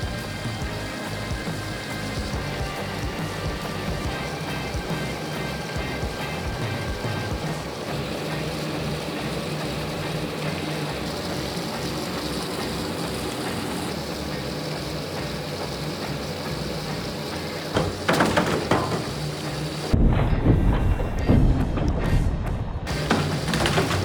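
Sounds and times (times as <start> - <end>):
motor and treadmill whir: 0.0 - 20.0, 22.9 - 24.0
clattering plastic knocks: 17.7 - 19.7, 22.9 - 24.0.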